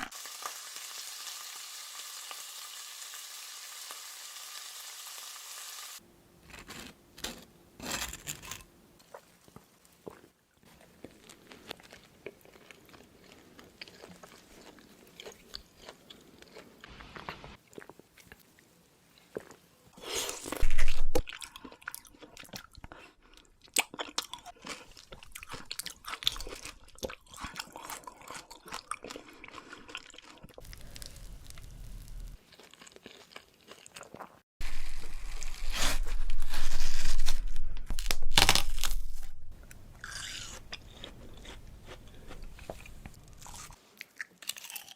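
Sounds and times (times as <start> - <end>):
crunchy biting and chewing: 10.8 - 17.0, 19.4 - 44.9.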